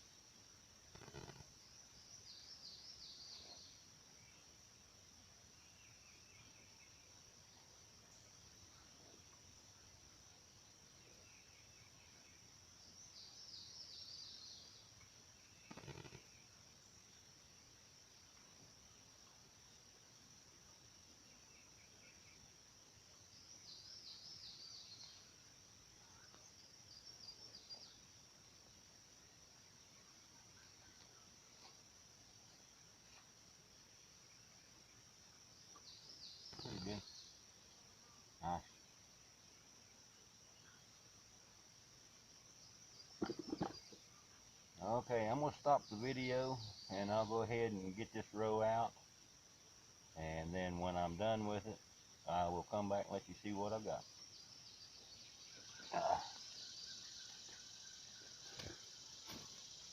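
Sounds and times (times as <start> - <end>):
insect drone: 0.0 - 59.9
bird chirping: 11.0 - 17.3, 23.2 - 25.4, 35.6 - 37.8, 42.6 - 48.9, 50.2 - 59.9.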